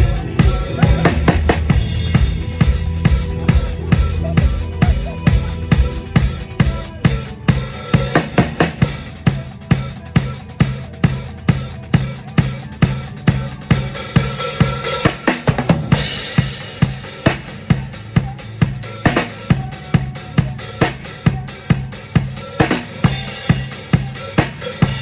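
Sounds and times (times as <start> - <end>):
cymbal crash: 0.0 - 9.9
low bass notes: 0.0 - 20.8
drum kit playing a steady beat: 0.0 - 25.0.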